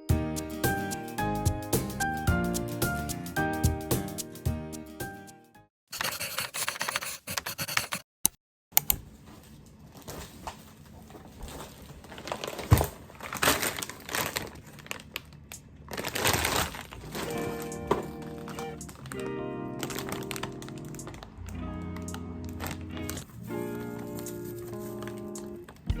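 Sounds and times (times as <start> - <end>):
rustling and crinkling handling: 9.0 - 26.0.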